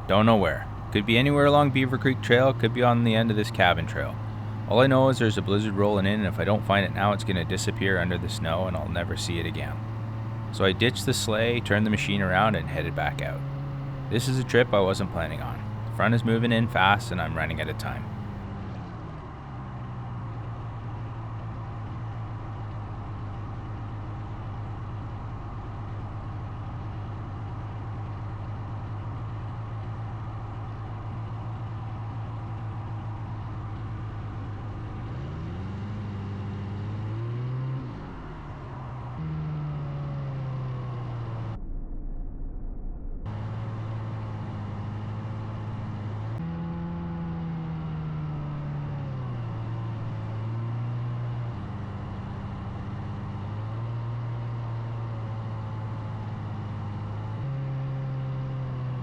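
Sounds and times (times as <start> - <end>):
snowmobile engine running: 0.0 - 18.4.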